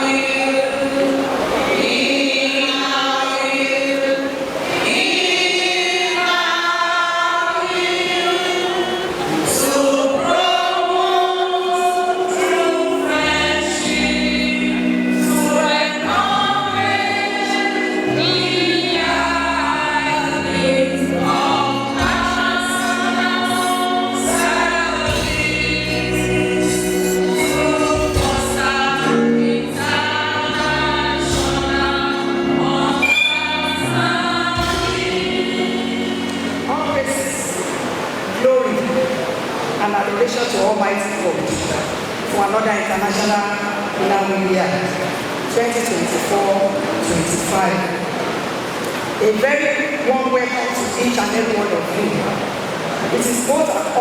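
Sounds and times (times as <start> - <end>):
choir singing gospel song: 0.0 - 54.0
bass accompaniment: 13.1 - 37.0.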